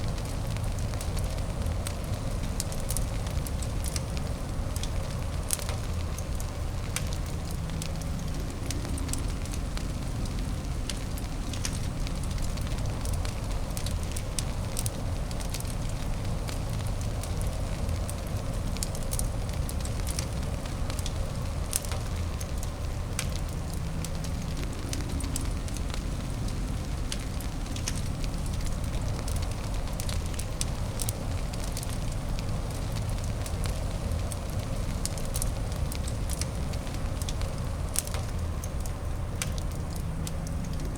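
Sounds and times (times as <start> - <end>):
fire crackling and popping: 0.0 - 40.9
low fire rumble: 0.0 - 40.9.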